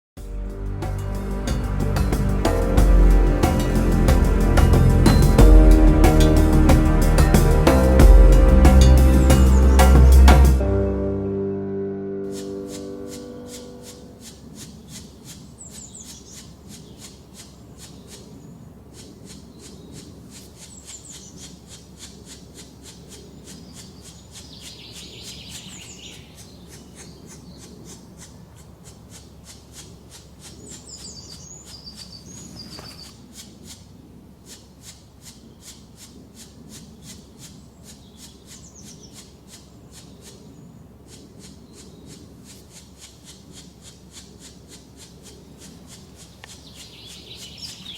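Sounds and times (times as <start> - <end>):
high-pitched chirring: 0.2 - 14.4.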